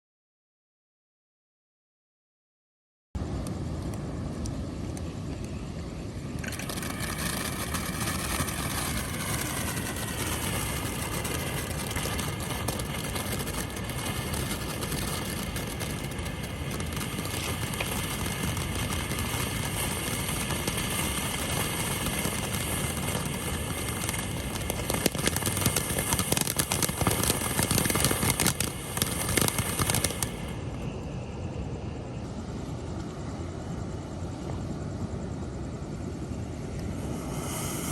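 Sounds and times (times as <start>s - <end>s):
firework whistling: 6.1s - 32.3s, 36.4s - 37.9s
firework crackling: 6.3s - 30.8s, 36.8s - 37.9s
firework rushing hiss: 6.3s - 30.8s, 36.5s - 37.9s.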